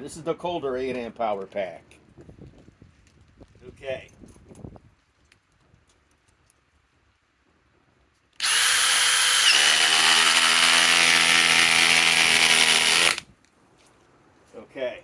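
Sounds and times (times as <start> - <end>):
impact driver buzzing: 8.4 - 13.2.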